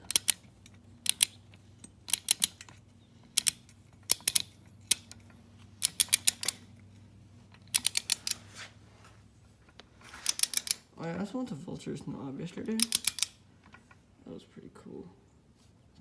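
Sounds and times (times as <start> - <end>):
ratchet wrench clicking: 0.0 - 6.7, 7.6 - 8.4, 10.2 - 10.8, 12.8 - 13.4.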